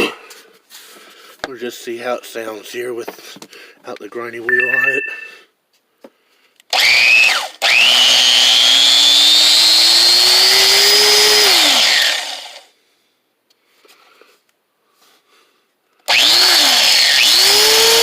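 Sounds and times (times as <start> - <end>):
angle grinder whining: 6.8 - 12.7, 16.1 - 18.0.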